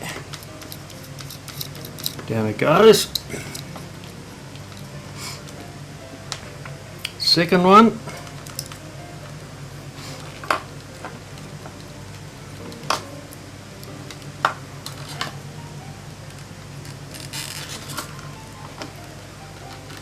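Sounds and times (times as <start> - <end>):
metal parts clicking and tapping: 0.2 - 2.3
metal parts rattling: 0.2 - 2.3.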